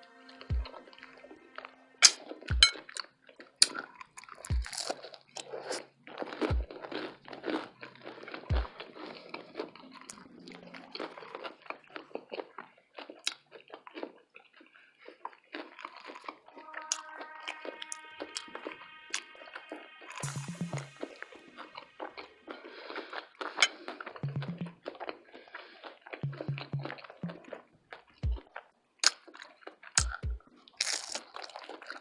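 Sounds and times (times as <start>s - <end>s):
wet chewing with mouth clicks: 0.6s - 32.0s
crunching bites: 2.1s - 16.5s, 21.6s - 32.0s.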